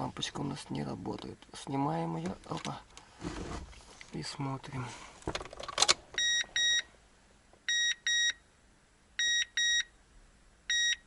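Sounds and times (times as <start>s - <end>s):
car warning double beeps: 6.2s - 6.9s, 7.7s - 8.4s, 9.2s - 9.9s, 10.7s - 11.0s.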